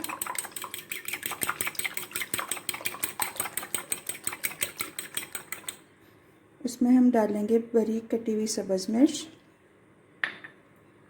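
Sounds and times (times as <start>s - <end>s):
whisk clicking against bowl: 0.0s - 5.8s.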